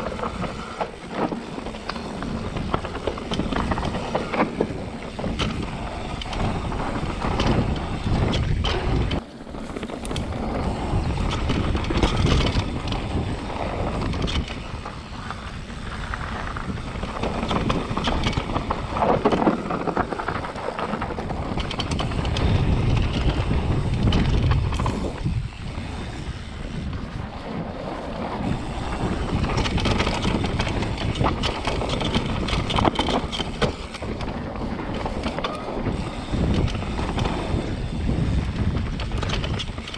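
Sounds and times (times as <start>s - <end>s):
bike frame and chain clattering: 0.0s - 39.9s
bike tyre noise: 0.0s - 39.9s
wind on microphone: 0.0s - 39.9s.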